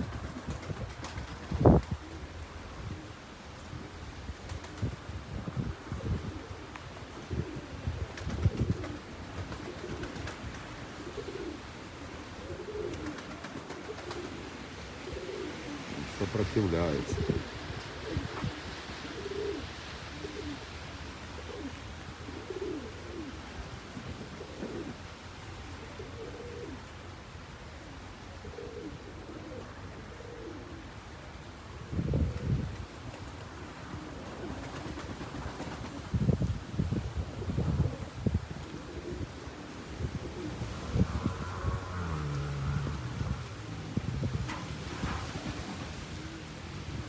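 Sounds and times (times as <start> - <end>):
wind buffeting microphone: 0.0 - 2.1, 7.2 - 10.8, 34.9 - 47.0
low moaning cooing tones: 40.0 - 45.3.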